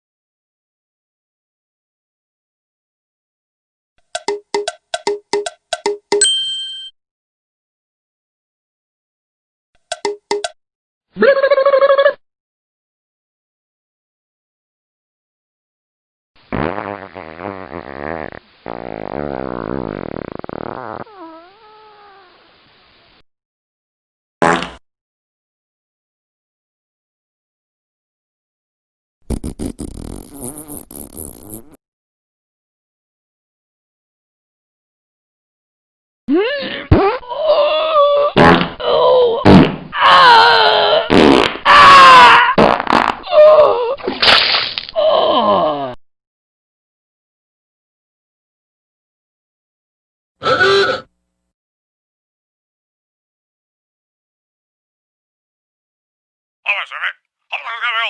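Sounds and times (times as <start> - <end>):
cat-like wavering cry: 40.0 - 41.1.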